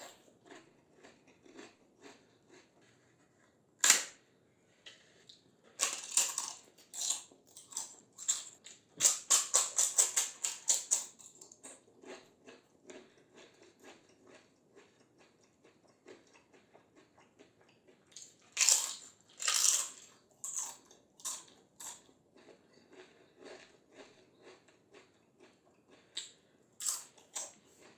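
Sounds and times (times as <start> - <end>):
crisp food being bitten and crunched: 0.0 - 3.0, 5.8 - 17.4, 18.0 - 27.9
chewing: 0.0 - 3.3, 4.8 - 27.9.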